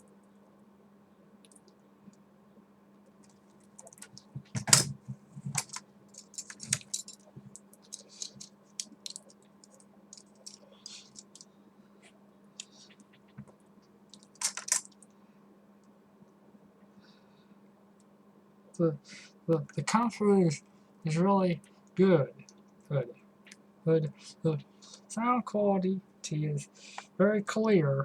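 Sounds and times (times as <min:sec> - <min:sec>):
faint low hum: 0:00.0 - 0:28.0
small objects clicking and rattling: 0:03.3 - 0:04.9, 0:05.5 - 0:11.5, 0:14.1 - 0:15.1.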